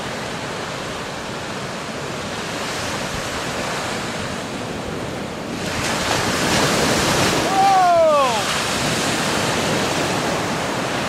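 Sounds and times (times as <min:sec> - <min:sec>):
surf washing up a beach: 0:00.0 - 0:11.0
wind on microphone: 0:00.0 - 0:11.0.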